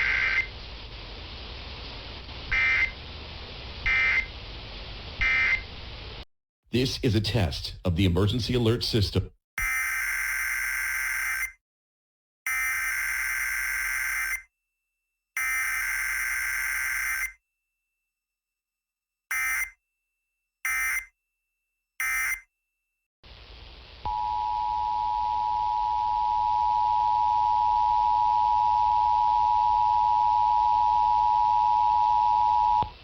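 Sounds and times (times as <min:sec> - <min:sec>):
hiss: 0:00.0 - 0:06.2.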